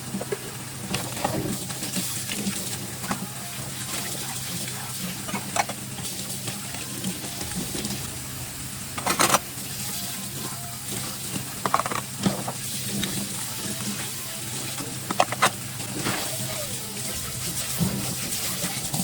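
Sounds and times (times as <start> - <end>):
steady low hum: 0.0 - 19.0
dishes clinking and knocking: 9.0 - 9.6, 11.3 - 13.3, 14.6 - 16.3.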